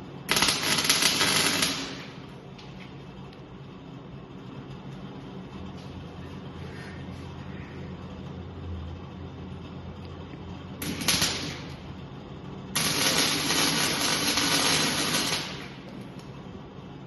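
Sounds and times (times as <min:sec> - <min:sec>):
welding arc hissing: 0:00.0 - 0:02.3, 0:10.8 - 0:11.9, 0:12.8 - 0:15.9.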